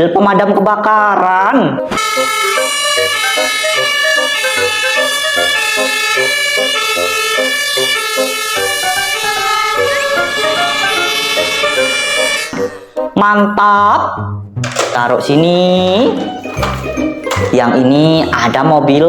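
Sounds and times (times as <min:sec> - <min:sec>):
toy siren stepping tones: 0:02.0 - 0:12.9.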